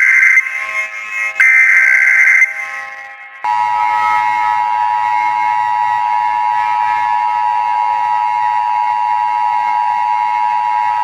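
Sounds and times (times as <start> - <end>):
two-note electronic alert tone: 0.0 - 3.0.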